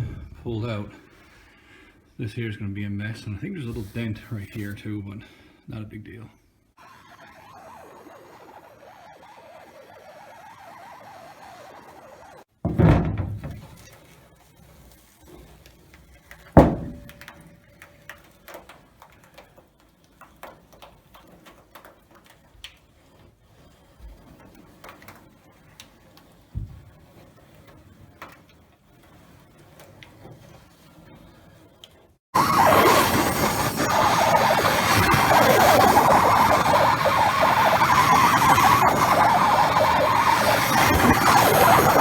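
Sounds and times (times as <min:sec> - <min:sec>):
heavy knocks on metal: 0:12.7 - 0:13.9, 0:16.6 - 0:17.2.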